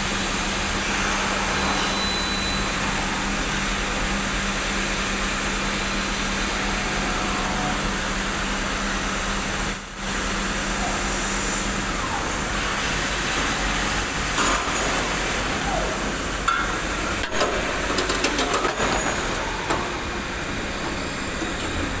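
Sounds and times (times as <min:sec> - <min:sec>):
machine running with hum: 0:00.0 - 0:22.0.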